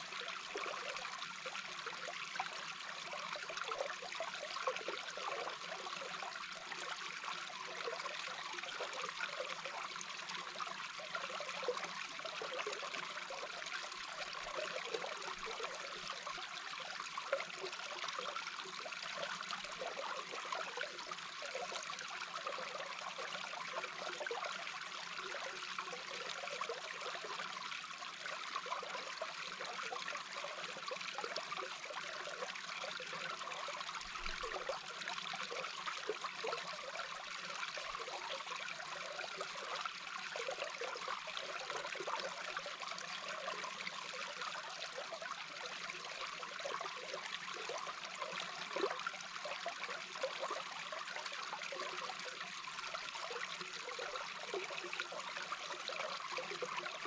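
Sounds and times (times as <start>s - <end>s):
flowing water underwater: 0.0s - 57.0s.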